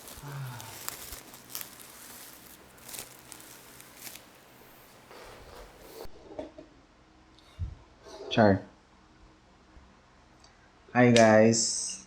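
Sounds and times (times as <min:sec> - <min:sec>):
packaging rustling and scraping: 0:00.0 - 0:06.1.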